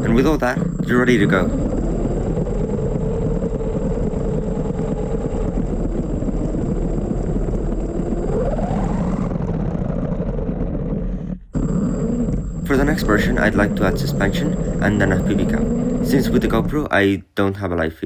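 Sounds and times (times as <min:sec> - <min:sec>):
electric motors whining: 0:00.0 - 0:16.9
steady hiss: 0:11.6 - 0:16.9.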